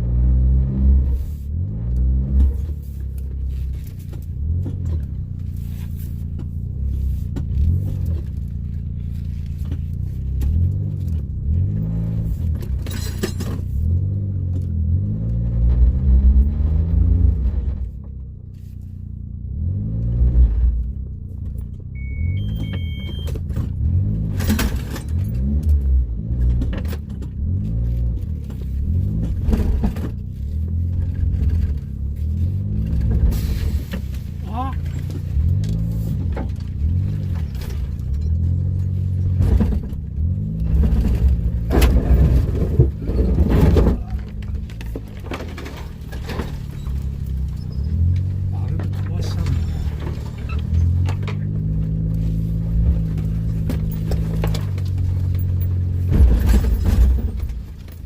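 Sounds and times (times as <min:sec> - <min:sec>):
vehicle engine rising and falling: 0:00.0 - 0:58.0
short electronic beeps: 0:21.9 - 0:23.4.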